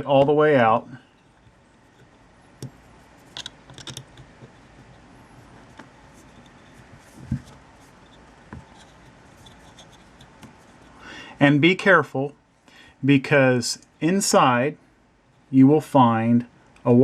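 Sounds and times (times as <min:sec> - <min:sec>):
wrench clicks and scratches: 0:03.3 - 0:04.3.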